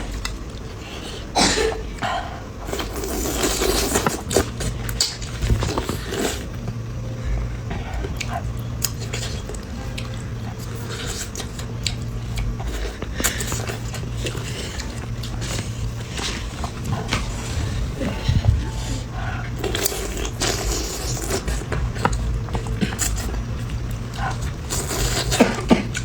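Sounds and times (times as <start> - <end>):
low steady hum: 0.0 - 26.0
chewing and mouth smacks: 7.7 - 17.3.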